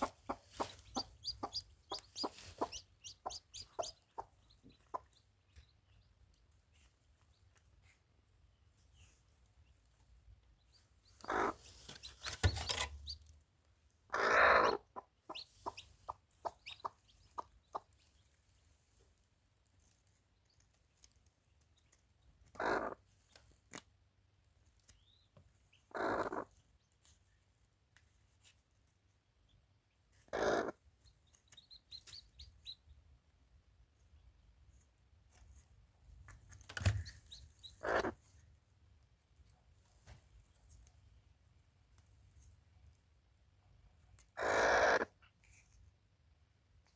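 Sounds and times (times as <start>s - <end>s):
chickens clucking: 0.0s - 5.7s, 11.1s - 13.2s, 14.1s - 18.0s, 25.9s - 26.5s, 37.1s - 38.2s.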